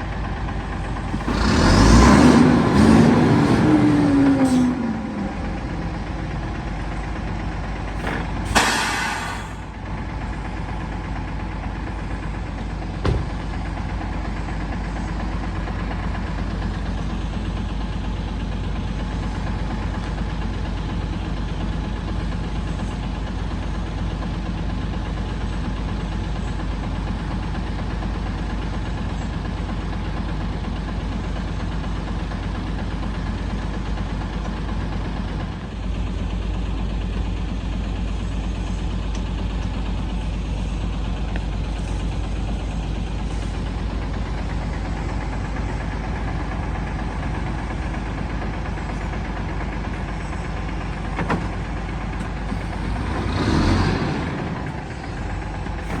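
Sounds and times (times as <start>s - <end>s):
diesel engine idling: 0.0s - 56.0s
sharp knock: 8.0s - 9.6s.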